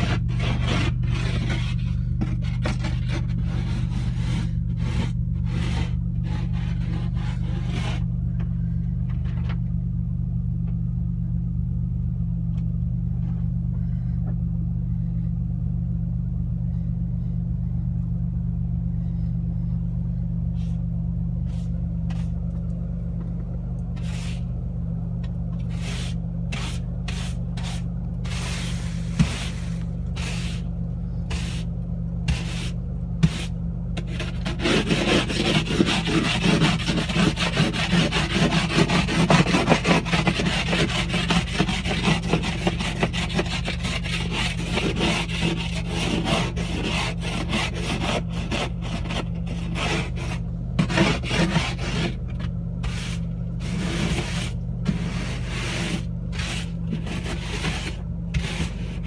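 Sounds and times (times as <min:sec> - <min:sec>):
rasping scrapes: 0:00.0 - 0:08.1, 0:21.5 - 0:22.4, 0:24.0 - 0:24.5, 0:25.6 - 0:31.7, 0:32.3 - 0:59.0
steady low hum: 0:00.0 - 0:59.0.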